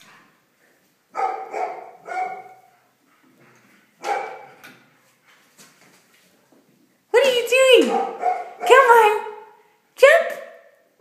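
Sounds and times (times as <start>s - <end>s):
dog barking: 1.1s - 2.7s, 4.0s - 4.6s, 7.8s - 9.6s.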